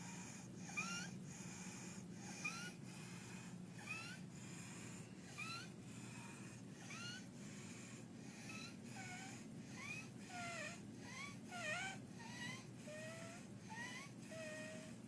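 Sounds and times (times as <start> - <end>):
child's noisy squeaky breathing: 6.8 - 7.3.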